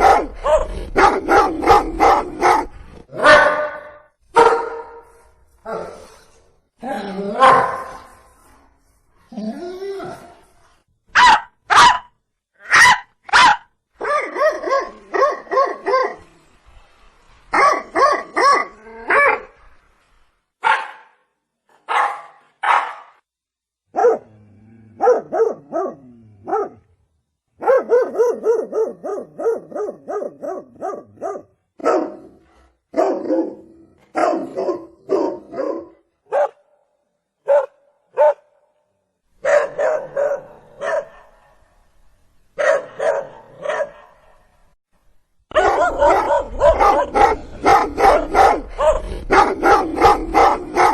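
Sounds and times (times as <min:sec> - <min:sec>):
dog barking: 0:00.0 - 0:05.1, 0:07.4 - 0:08.1, 0:11.1 - 0:16.2, 0:17.5 - 0:19.5, 0:20.6 - 0:21.2, 0:21.8 - 0:23.2, 0:23.9 - 0:24.3, 0:25.0 - 0:26.8, 0:27.6 - 0:36.7, 0:37.4 - 0:38.6, 0:39.4 - 0:41.6, 0:42.6 - 0:44.4, 0:45.5 - 0:50.9.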